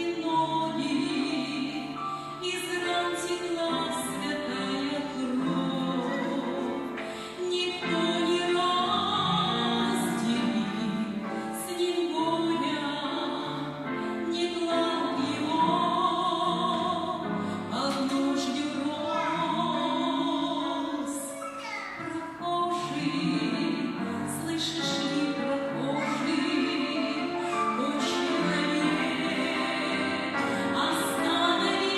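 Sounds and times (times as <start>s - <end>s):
woman singing operatically: 14.3s - 21.2s, 22.3s - 31.9s.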